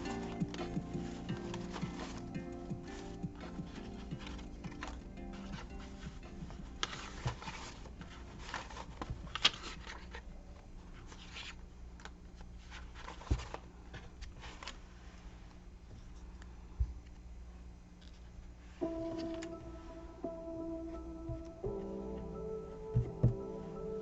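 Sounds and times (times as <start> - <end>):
paper rustling: 0.0 - 16.3, 18.0 - 20.0.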